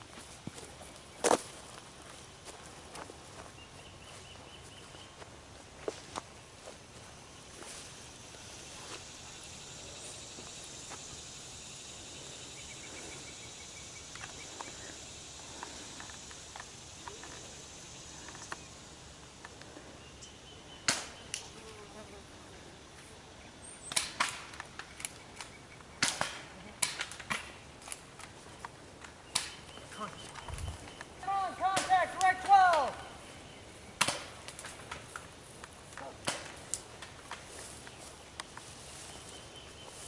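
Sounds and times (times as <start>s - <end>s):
high insect buzz: 5.8s - 23.8s
airsoft guns firing snaps: 20.8s - 21.5s, 23.9s - 27.6s, 29.3s - 29.7s, 34.0s - 35.0s, 36.2s - 36.9s.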